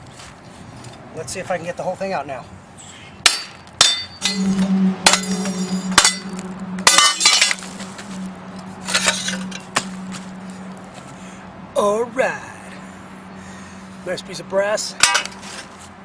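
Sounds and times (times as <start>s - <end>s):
metal parts clanking: 3.8s - 8.0s, 8.8s - 9.9s, 15.0s - 15.7s
steady low hum: 4.1s - 10.9s.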